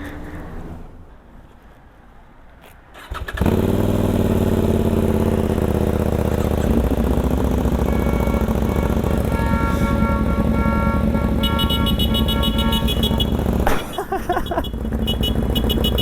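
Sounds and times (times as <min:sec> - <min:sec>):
motorcycle engine running: 0:03.4 - 0:16.0.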